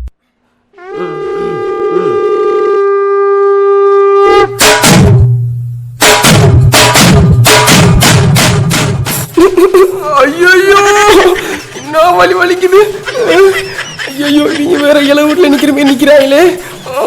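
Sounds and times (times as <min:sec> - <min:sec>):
horn-like wind instrument note: 0:00.7 - 0:05.3
fast drum beats: 0:06.0 - 0:10.0.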